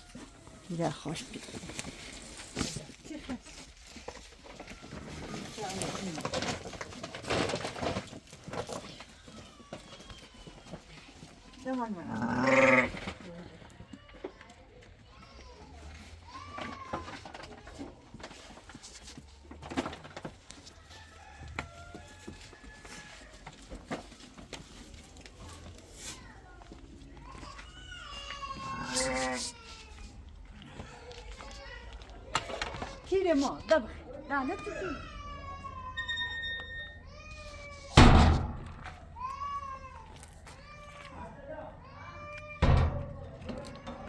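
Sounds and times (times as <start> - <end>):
rooster crowing: 20.8 - 23.4
animal high-pitched calls: 28.7 - 29.6.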